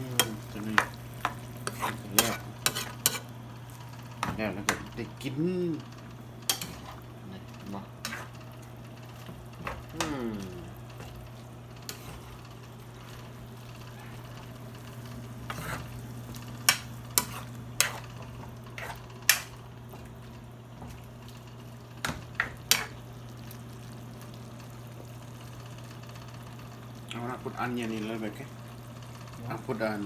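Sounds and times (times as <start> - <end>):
food frying in a pan: 0.0 - 30.0
utensil scraping a pan: 0.3 - 3.3, 8.0 - 8.4, 11.8 - 12.5, 15.4 - 16.0, 16.7 - 19.5.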